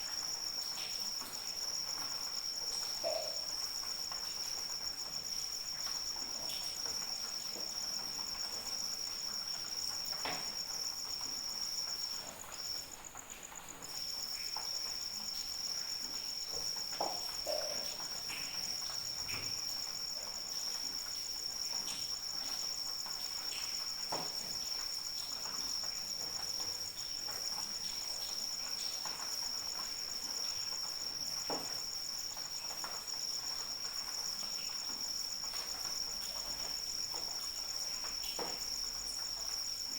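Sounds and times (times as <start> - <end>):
background hiss: 0.0 - 39.9
crickets chirping: 0.0 - 39.9.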